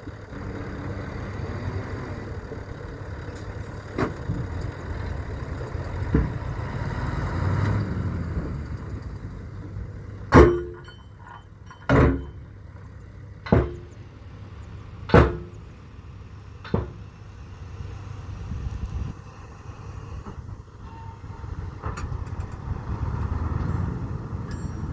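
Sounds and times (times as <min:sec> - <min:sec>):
heavy machinery engine running: 0:00.0 - 0:24.9
loud metallic bangs: 0:10.2 - 0:12.6, 0:13.4 - 0:14.2, 0:15.0 - 0:15.8.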